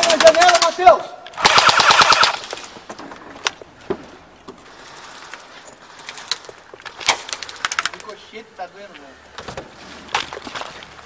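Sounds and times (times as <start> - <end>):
airsoft gun firing: 1.4 - 2.5
distant airsoft gun burst: 1.4 - 2.5.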